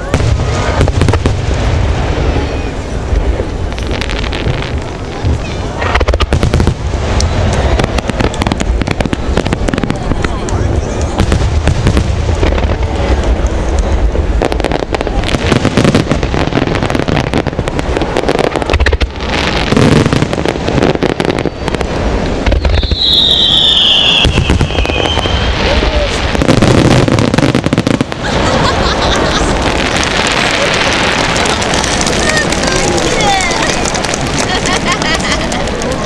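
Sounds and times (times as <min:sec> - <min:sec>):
fireworks bangs and crackle: 0:00.0 - 0:36.0
firework whistle sliding down: 0:22.4 - 0:25.6.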